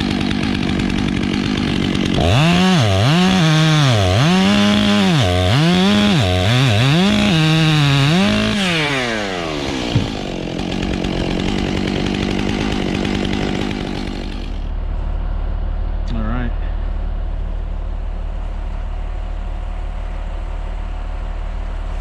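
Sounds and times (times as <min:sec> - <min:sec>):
chainsaw revving: 0:00.0 - 0:14.7
low engine drone: 0:14.5 - 0:22.0.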